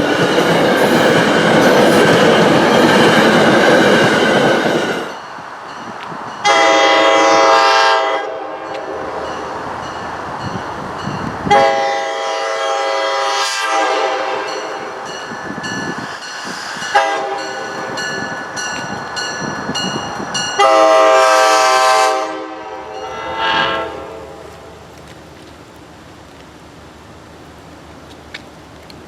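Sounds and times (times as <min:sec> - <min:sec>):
passing train rumble: 0:00.0 - 0:29.0
train air horn blasts: 0:06.4 - 0:09.4, 0:11.5 - 0:15.0, 0:16.9 - 0:18.0, 0:20.6 - 0:24.8.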